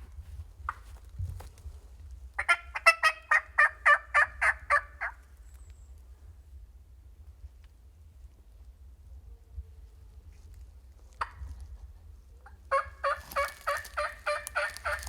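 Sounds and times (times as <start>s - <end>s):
turkey calling: 2.4s - 5.3s, 12.4s - 15.0s.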